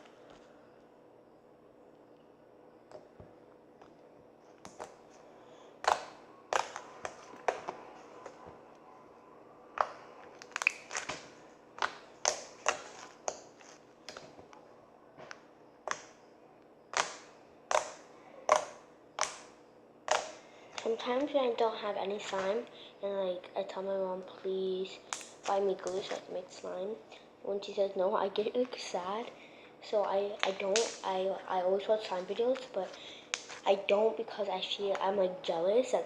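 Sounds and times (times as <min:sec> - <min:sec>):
slime air pockets popping: 0:05.8 - 0:08.4, 0:09.8 - 0:14.3, 0:15.9 - 0:16.1, 0:16.9 - 0:19.5, 0:20.1 - 0:20.9, 0:30.4 - 0:31.1.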